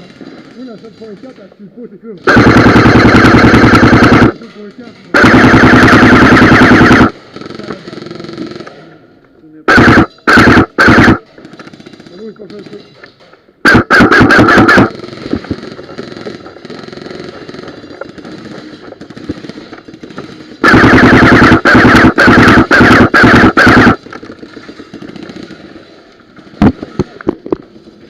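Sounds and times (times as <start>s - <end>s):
airsoft gun firing full auto: 2.3s - 4.4s, 5.1s - 7.7s, 9.7s - 12.2s, 13.6s - 25.8s.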